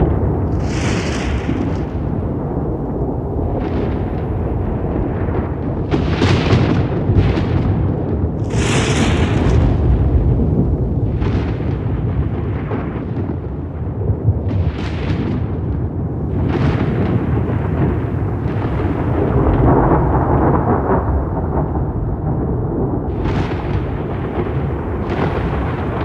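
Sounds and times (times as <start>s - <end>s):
crackling thunder claps: 0.0s - 26.0s
thunder rumbling: 0.0s - 26.0s.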